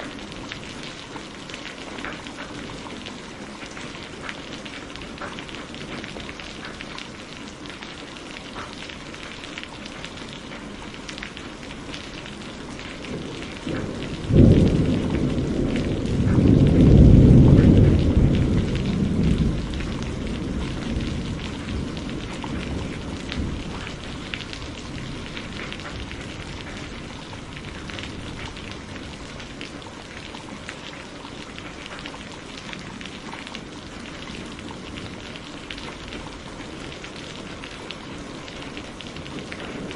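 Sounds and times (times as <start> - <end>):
steady rain falling: 0.0 - 39.9
thunderclap and rumble: 12.0 - 39.9.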